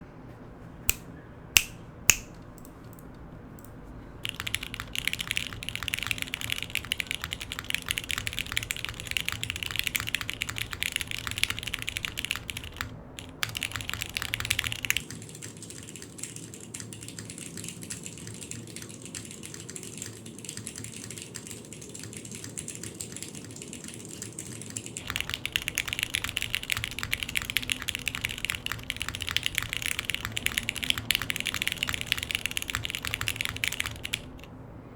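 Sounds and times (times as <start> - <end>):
sharp clicks: 0.9 - 15.0, 25.0 - 34.5
mechanical keyboard typing: 1.6 - 34.5.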